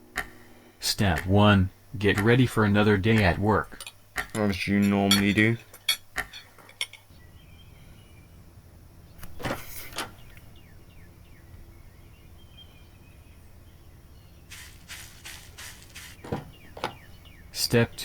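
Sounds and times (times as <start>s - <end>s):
outdoor background: 0.0s - 18.0s
faint bird chirps: 10.1s - 18.0s
short noisy sounds: 14.5s - 16.4s.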